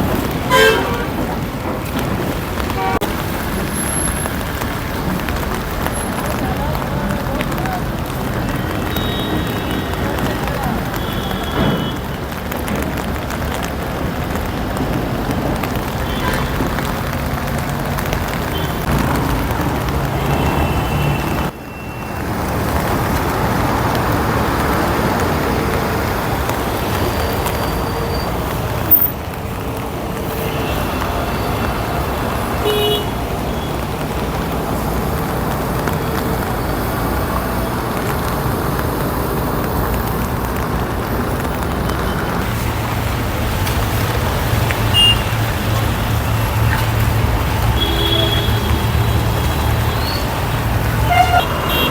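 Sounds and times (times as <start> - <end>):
vehicle engines rumbling: 0.0 - 51.9
car horn toots: 0.5 - 1.2, 44.9 - 45.3, 51.0 - 51.9.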